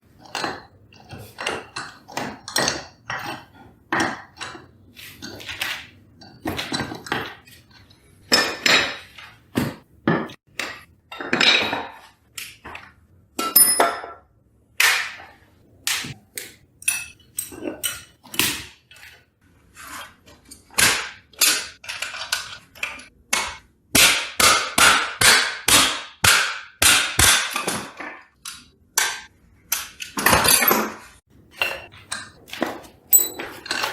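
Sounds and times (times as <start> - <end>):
tools clanking: 16.8 - 18.4, 29.7 - 33.9.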